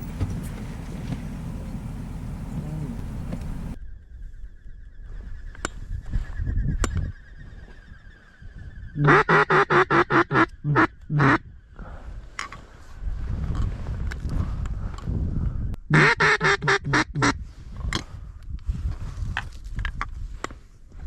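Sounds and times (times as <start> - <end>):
duck quacking: 9.0 - 11.4, 15.9 - 17.3.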